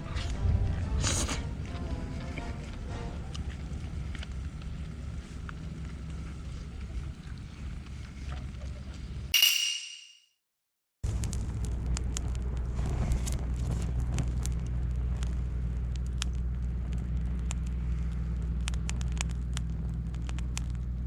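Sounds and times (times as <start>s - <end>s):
campfire crackling and popping: 11.0s - 21.0s.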